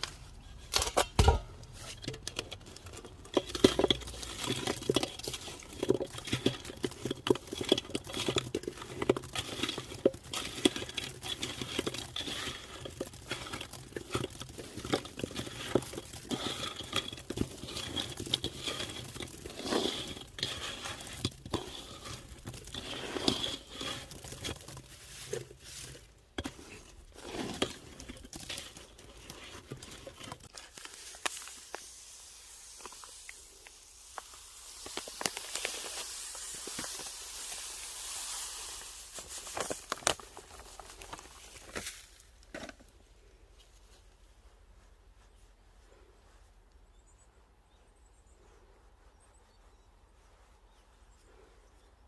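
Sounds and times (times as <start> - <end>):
crinkling rustling handling noises: 0.0 - 46.9
steady hiss: 30.8 - 39.9.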